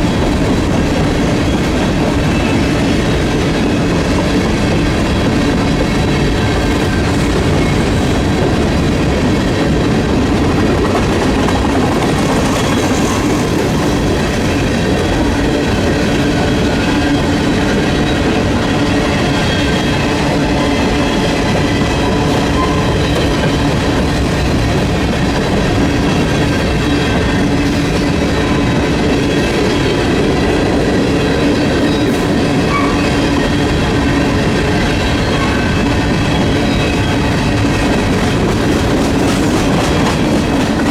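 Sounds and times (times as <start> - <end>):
train wheels rumbling on rails: 0.0 - 40.9.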